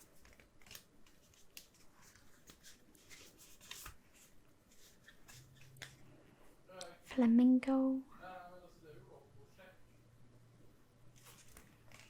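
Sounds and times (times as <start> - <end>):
cards clicking: 0.0 - 4.0
cards rustling and sliding: 0.0 - 6.0, 11.1 - 12.0.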